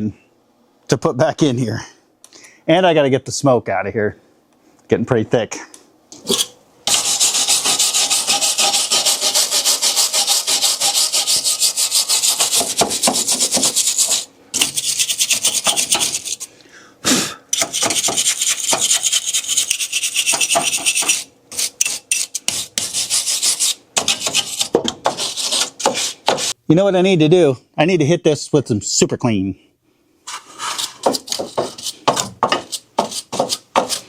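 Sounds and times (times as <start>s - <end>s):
brush scrubbing metal: 6.9s - 16.5s, 17.6s - 26.6s, 30.3s - 34.0s.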